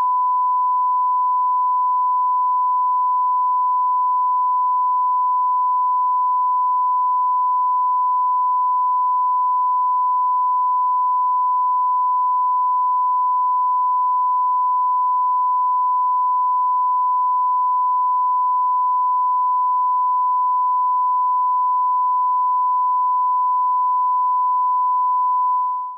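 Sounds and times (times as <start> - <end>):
sine-wave test tone: 0.0 - 25.9.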